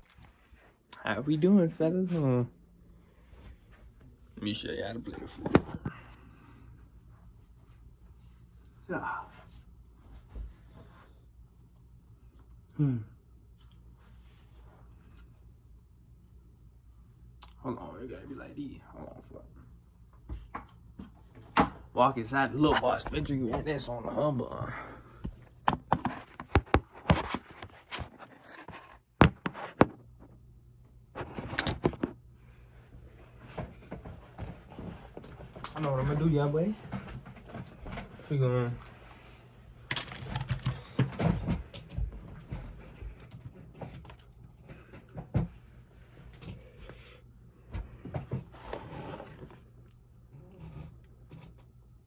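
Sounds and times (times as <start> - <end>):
objects being handled and set down: 5.1 - 6.1, 25.2 - 30.4, 31.1 - 32.2, 33.1 - 47.0.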